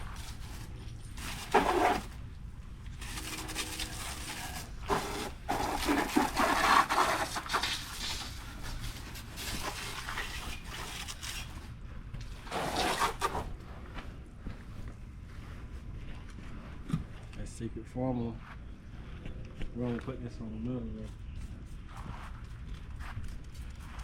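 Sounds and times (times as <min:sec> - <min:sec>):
water spraying and splashing: 0:04.9 - 0:08.4.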